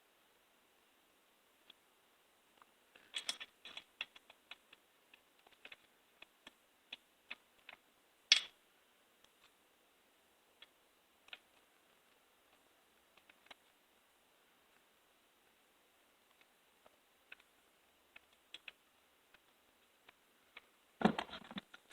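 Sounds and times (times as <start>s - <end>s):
small plastic and metal parts clicking: 2.6s - 8.6s, 18.1s - 21.9s.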